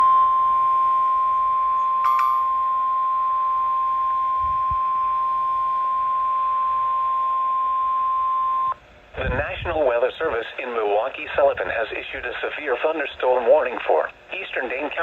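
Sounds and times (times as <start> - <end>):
steady high alarm tone: 0.0 - 8.8.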